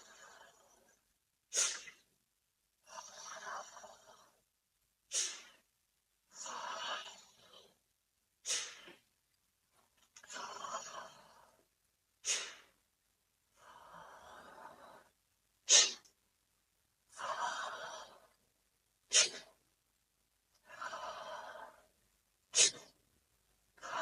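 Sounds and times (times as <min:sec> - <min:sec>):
breath drawn through mouth: 0:01.5 - 0:02.0, 0:05.1 - 0:05.6, 0:08.4 - 0:09.0, 0:12.2 - 0:12.8, 0:15.7 - 0:16.1, 0:19.1 - 0:19.5, 0:22.5 - 0:23.0
forceful exhale through nose: 0:01.5 - 0:02.0, 0:05.1 - 0:05.6, 0:08.4 - 0:09.0, 0:12.2 - 0:12.8, 0:15.7 - 0:16.0, 0:19.1 - 0:19.5, 0:22.6 - 0:23.0.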